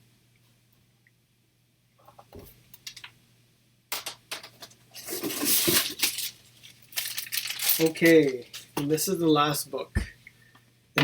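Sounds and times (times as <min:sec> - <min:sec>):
packing crinkling: 0:05.0 - 0:08.8.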